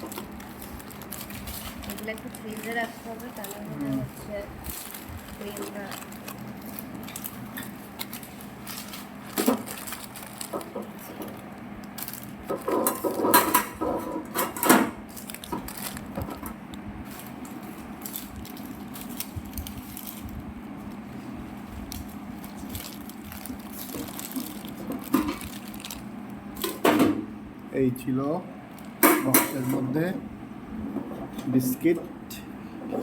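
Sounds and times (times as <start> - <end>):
biscuit packets crinkling: 0.0 - 14.0, 15.0 - 26.8.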